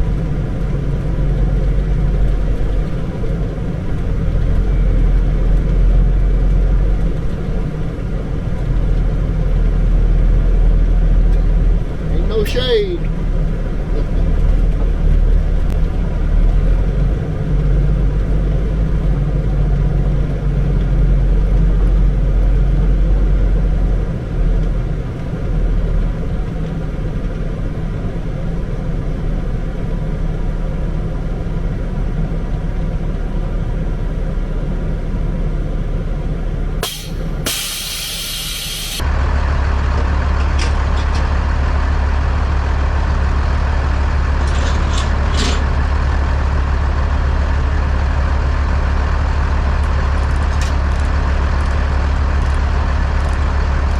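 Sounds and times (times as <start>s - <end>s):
heavy truck engine rumbling: 0.0s - 53.9s
short air hiss: 36.8s - 39.0s.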